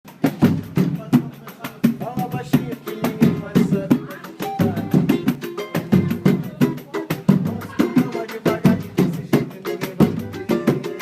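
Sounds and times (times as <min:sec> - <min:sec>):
drum and percussion strikes: 0:00.1 - 0:11.0
live samba band playing: 0:00.1 - 0:11.0.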